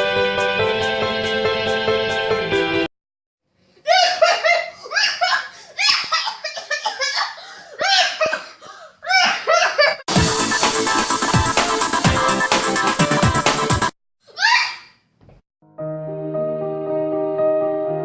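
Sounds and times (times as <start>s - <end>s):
music: 0.0s - 2.9s, 10.1s - 13.9s, 15.6s - 18.0s
person laughing hard: 3.8s - 10.0s.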